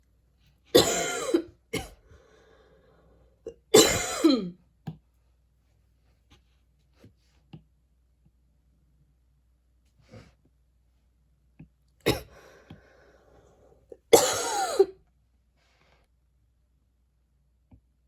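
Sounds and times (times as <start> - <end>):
woman coughing: 0.8 - 2.0, 3.5 - 4.6, 12.0 - 12.4, 14.0 - 15.0.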